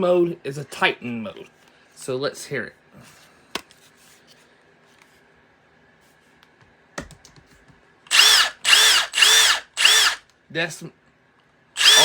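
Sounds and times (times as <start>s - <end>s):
impact driver motor whine: 8.1s - 10.2s, 11.8s - 12.0s.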